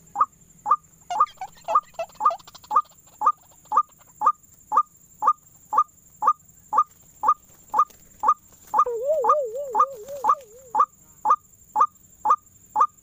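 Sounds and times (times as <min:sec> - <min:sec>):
bird call from loudspeaker: 0:08.8 - 0:10.9.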